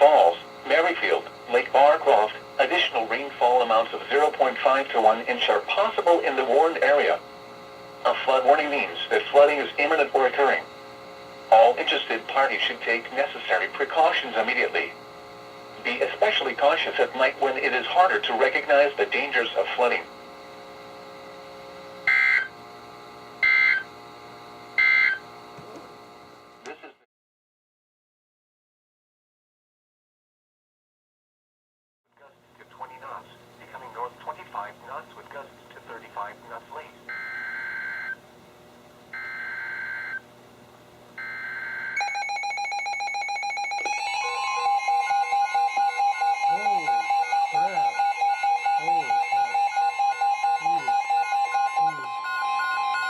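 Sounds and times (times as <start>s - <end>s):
steady warning alarm tone: 0.0s - 25.4s, 37.1s - 38.2s, 39.1s - 40.2s, 41.2s - 53.0s
low steady radio hiss: 0.0s - 27.0s, 32.1s - 41.1s, 43.8s - 52.1s
electronic alarm beeps: 22.1s - 22.5s, 23.4s - 23.9s, 24.8s - 25.2s, 37.1s - 38.2s, 39.2s - 40.2s, 41.2s - 53.0s
digital data tone bursts: 24.8s - 25.2s, 43.2s - 53.0s.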